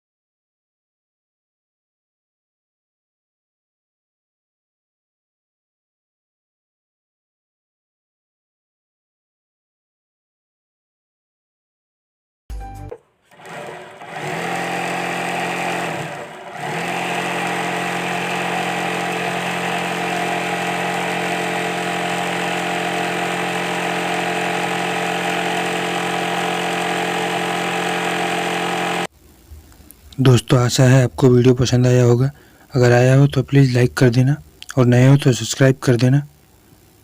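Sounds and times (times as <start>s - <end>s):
sewing machine motor whine: 13.3s - 29.1s.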